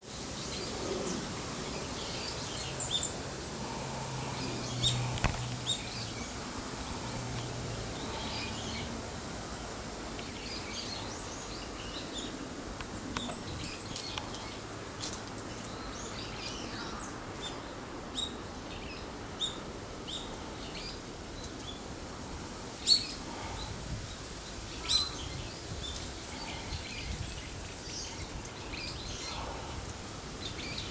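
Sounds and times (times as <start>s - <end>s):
steady background noise: 0.0s - 30.9s
bulbuls calling: 0.2s - 9.2s, 22.7s - 30.9s.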